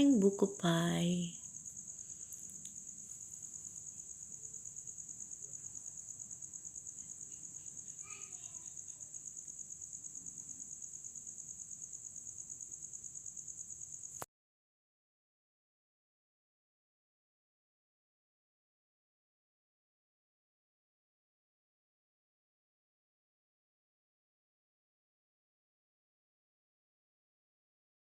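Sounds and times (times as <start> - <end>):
crickets chirping: 0.0 - 14.3.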